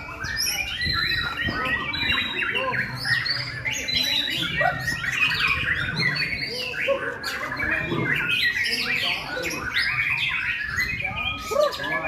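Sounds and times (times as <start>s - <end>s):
bird singing whistles and chatter: 0.0s - 12.0s.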